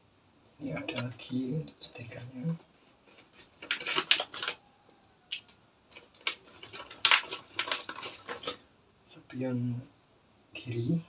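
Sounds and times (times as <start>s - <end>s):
plastic packaging crackling: 2.5s - 4.7s, 5.3s - 8.6s.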